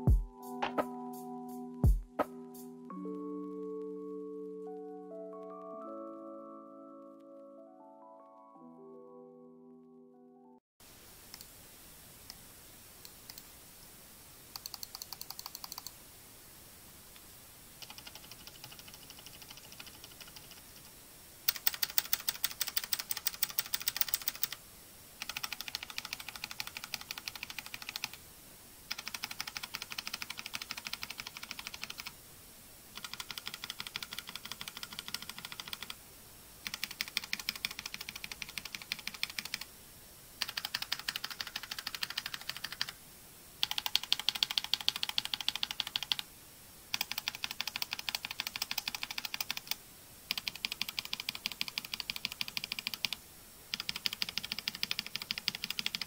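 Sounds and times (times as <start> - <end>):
fast mechanical keyboard typing: 14.6 - 15.9, 17.8 - 20.9, 21.5 - 24.6, 25.2 - 28.2, 28.9 - 32.1, 32.9 - 36.0, 36.6 - 39.7, 40.4 - 43.0, 43.6 - 46.3, 46.9 - 56.0.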